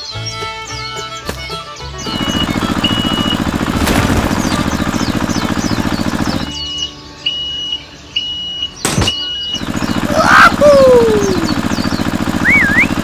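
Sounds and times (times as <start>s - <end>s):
engine knock: 1.3s - 6.6s, 9.6s - 13.0s.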